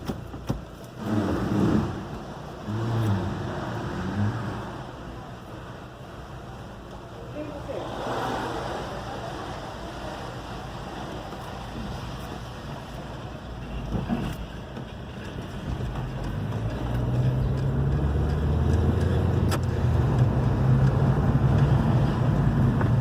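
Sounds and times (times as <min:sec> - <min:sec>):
road noise: 0:00.0 - 0:23.0
car engine running: 0:13.6 - 0:23.0.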